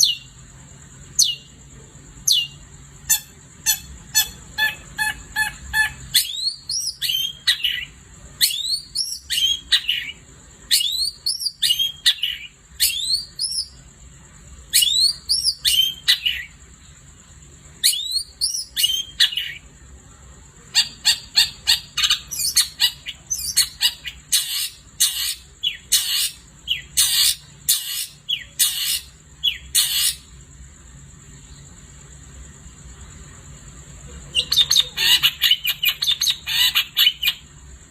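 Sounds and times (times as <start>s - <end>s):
bird whistling song: 0.0s - 0.4s, 1.1s - 1.6s, 2.2s - 13.8s, 14.7s - 16.6s, 17.8s - 19.6s, 20.8s - 30.3s, 34.3s - 37.5s.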